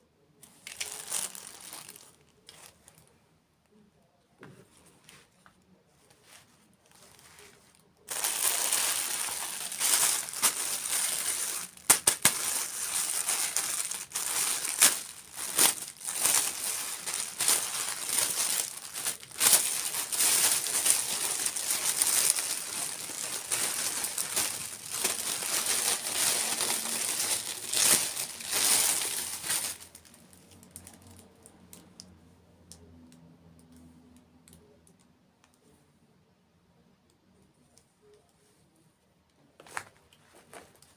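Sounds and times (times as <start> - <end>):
plastic packaging crinkling: 0.6 - 3.0, 6.9 - 31.2.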